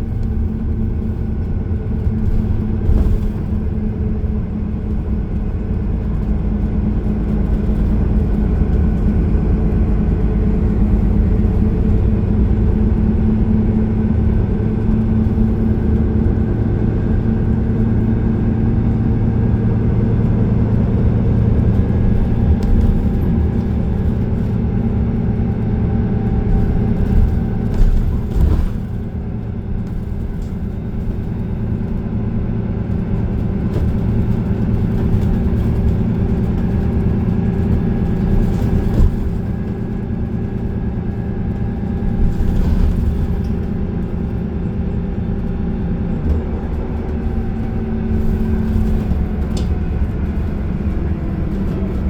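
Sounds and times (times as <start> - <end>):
bus engine and road rumble: 0.0 - 52.0.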